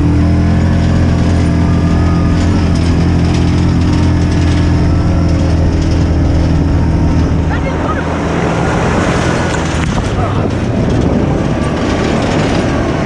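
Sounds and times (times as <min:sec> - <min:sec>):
small engine running: 0:00.0 - 0:13.0.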